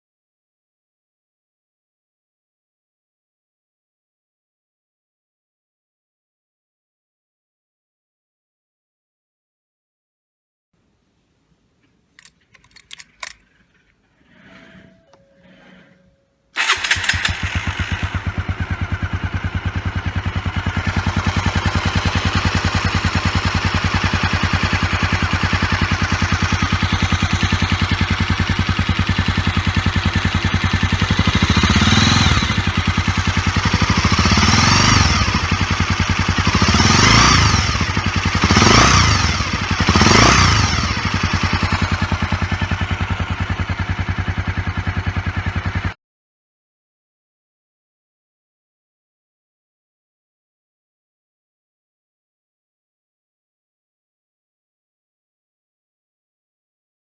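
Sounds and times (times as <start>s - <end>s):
motorcycle engine starting and idling: 12.2s - 46.0s.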